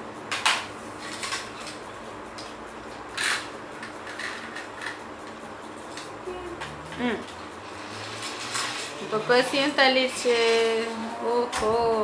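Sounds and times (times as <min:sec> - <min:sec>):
toy vehicles scraping: 0:07.6 - 0:11.2.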